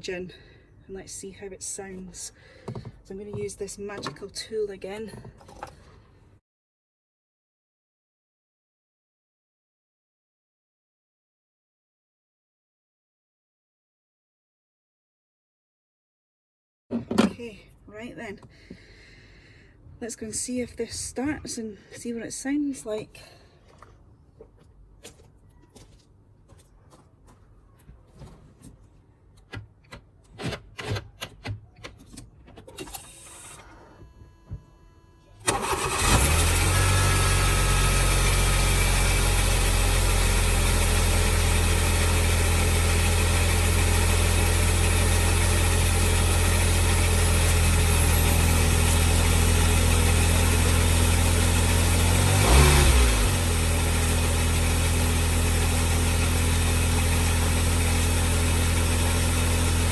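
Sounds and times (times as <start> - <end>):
car engine starting and idling: 35.4 - 59.9.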